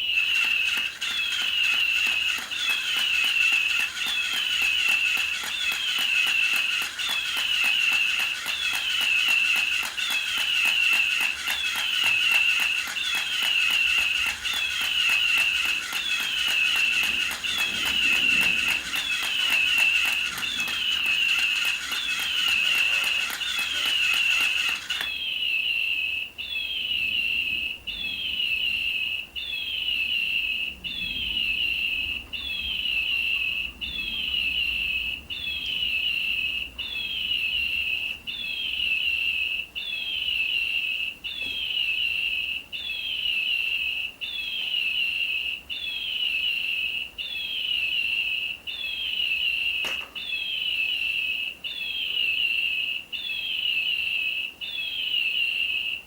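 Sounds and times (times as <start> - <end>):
toy bird electronic chirp: 0.0 - 56.0.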